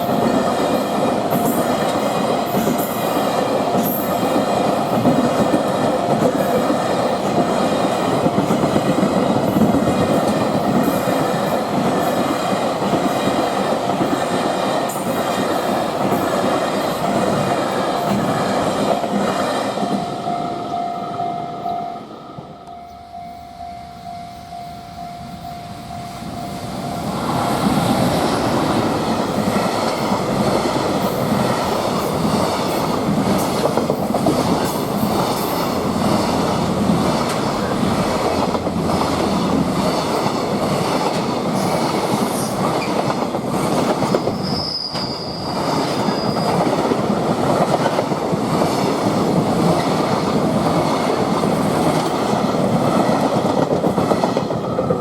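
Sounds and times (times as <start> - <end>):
freight train wheels on rails: 0.0 - 55.0
high wheel squeal: 44.2 - 46.8.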